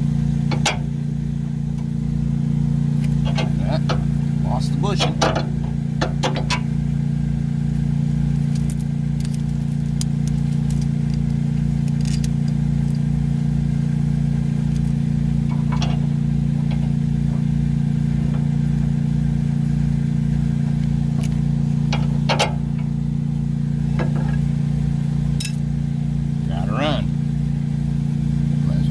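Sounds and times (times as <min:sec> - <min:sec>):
low engine-like hum: 0:00.0 - 0:28.9
metal parts clicking and knocking: 0:08.4 - 0:12.6.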